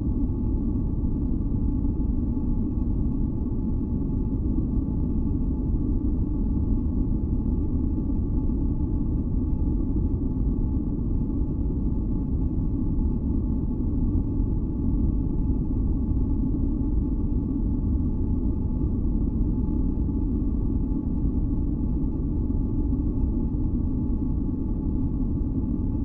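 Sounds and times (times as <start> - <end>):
faint humming tones: 0.0 - 26.0.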